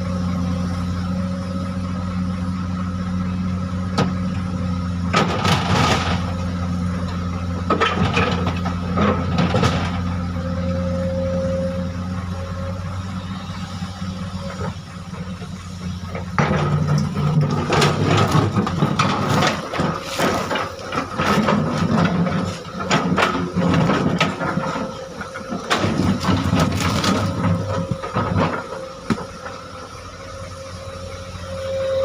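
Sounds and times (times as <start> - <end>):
diesel engine running: 0.0 - 32.0
boulders clattering against steel: 7.0 - 10.1, 15.2 - 29.8.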